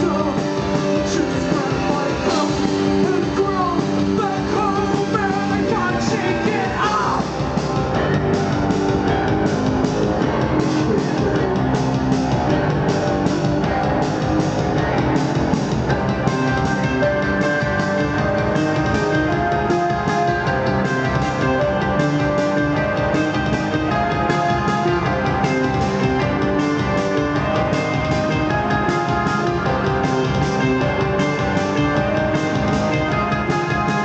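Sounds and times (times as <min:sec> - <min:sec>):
person singing: 0:00.0 - 0:07.4, 0:10.2 - 0:12.8
live rock band playing: 0:00.0 - 0:34.0.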